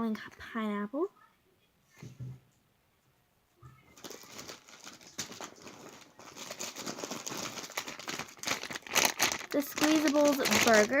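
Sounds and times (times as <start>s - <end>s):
plastic packaging crinkling: 3.9s - 11.0s.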